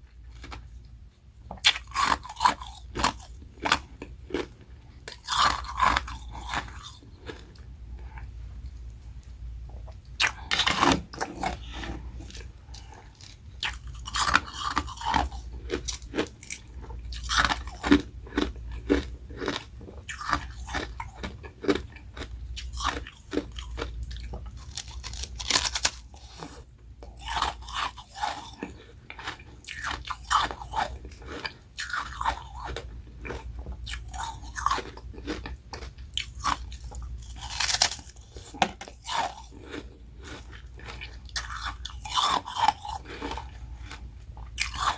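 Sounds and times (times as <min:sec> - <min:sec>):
person crunching ice: 0:05.1 - 0:07.5, 0:10.2 - 0:16.6, 0:22.6 - 0:26.6, 0:37.3 - 0:44.0.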